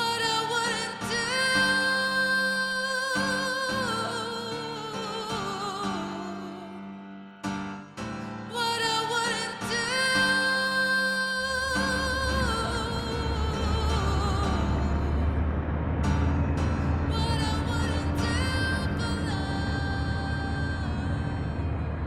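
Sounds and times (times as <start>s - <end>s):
slow music with vibrato notes: 0.0s - 22.0s
deep bass: 11.7s - 22.0s.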